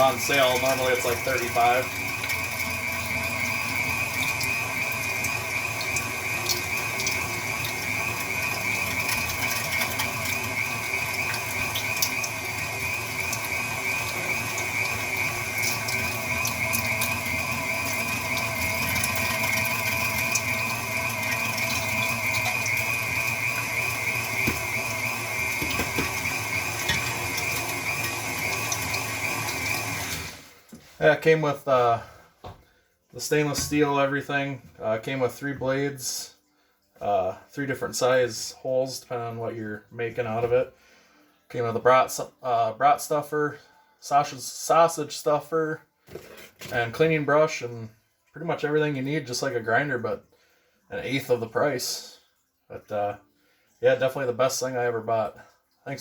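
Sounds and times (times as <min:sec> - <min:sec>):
mixer motor whining: 0:00.0 - 0:30.5.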